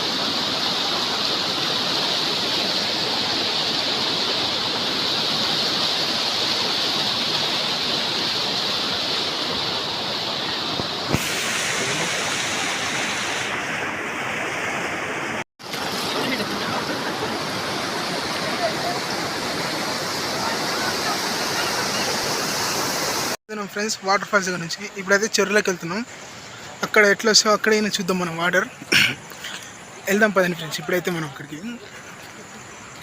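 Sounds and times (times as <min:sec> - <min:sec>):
waterfall splashing over rocks: 0:00.0 - 0:23.4.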